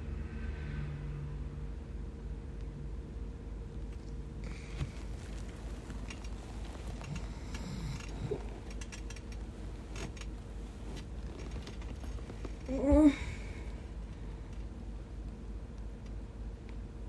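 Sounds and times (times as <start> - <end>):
steady low hum: 1.7 - 17.0
faint clicks and rustles: 3.6 - 15.4
sleeping woman vocal sound: 4.5 - 13.9.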